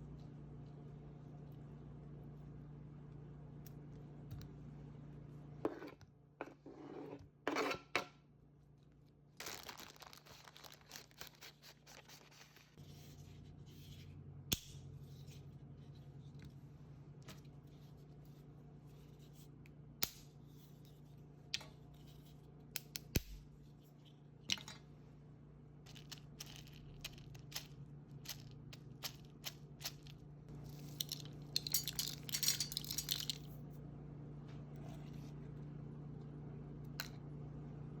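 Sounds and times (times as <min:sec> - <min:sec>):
rattling clinks: 0:31.0 - 0:33.5.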